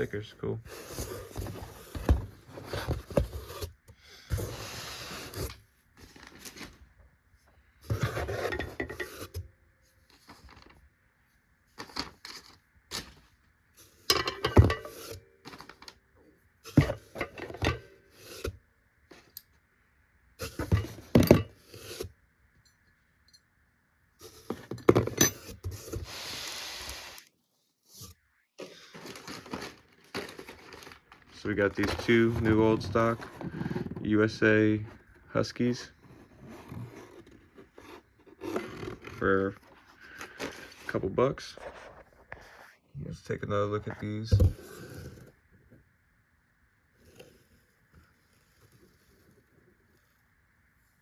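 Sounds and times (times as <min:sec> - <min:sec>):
packaging rustling: 0:28.6 - 0:34.0.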